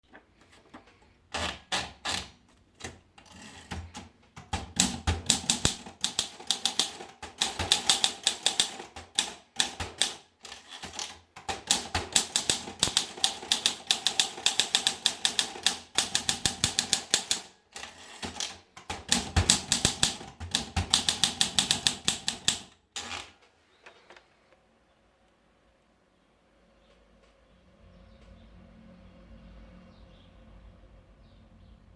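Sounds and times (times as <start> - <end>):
typewriter key strikes: 4.4 - 10.2, 10.9 - 17.5, 18.2 - 22.7.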